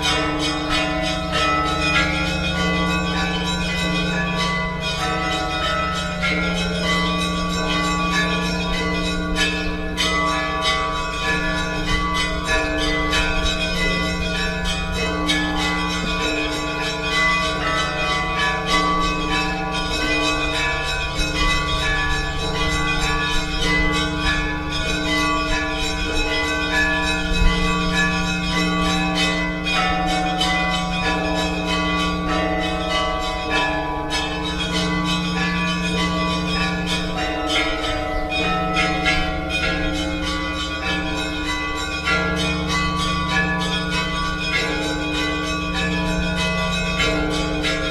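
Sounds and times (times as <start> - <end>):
deep church bell tolling: 0.0 - 47.9.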